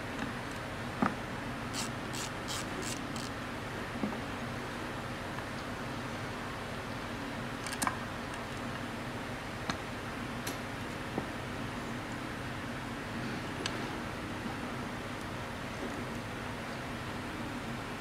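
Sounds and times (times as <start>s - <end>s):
tools clicking: 1.8s - 3.3s.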